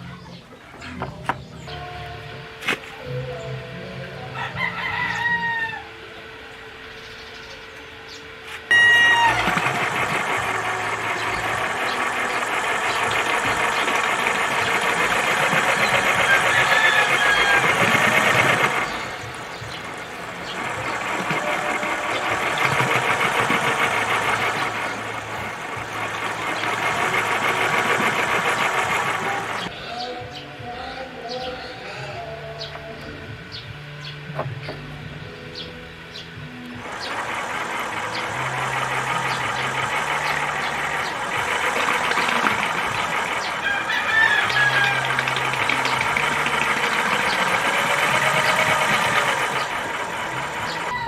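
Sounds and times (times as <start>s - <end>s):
electric motor mechanical clatter: 5.9s - 29.7s, 36.6s - 51.0s.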